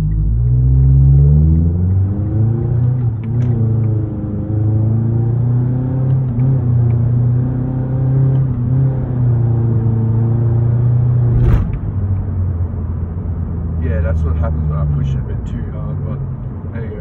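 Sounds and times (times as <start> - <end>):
engine rumbling at low speed: 11.0 - 17.0.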